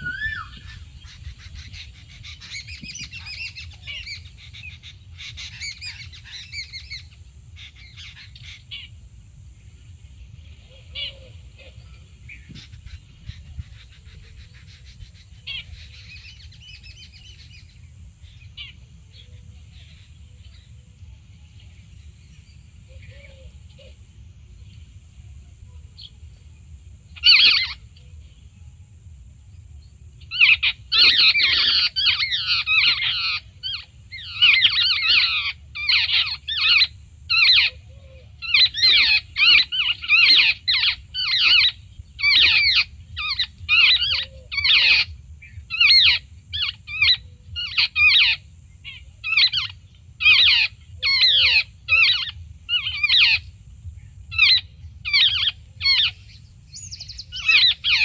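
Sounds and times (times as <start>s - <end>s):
bird chattering calls: 54.3s - 58.0s.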